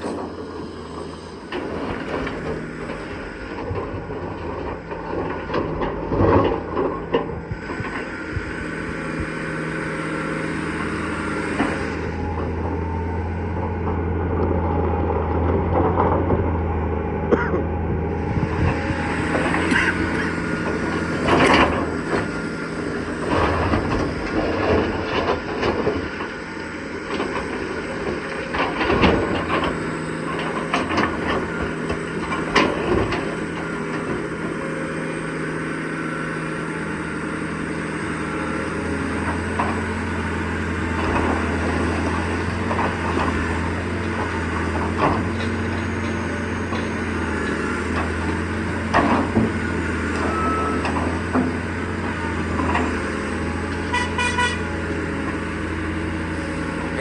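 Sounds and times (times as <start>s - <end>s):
diesel machinery engine drone: 0.0s - 57.0s.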